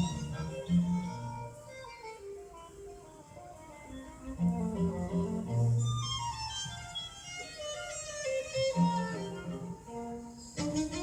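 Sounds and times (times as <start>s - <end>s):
plucked string instrument melody: 0.0s - 11.0s.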